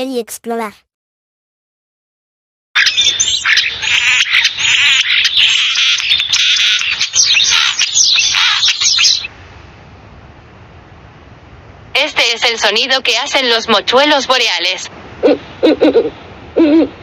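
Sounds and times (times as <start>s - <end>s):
songbirds chirping and singing: 2.8s - 9.3s.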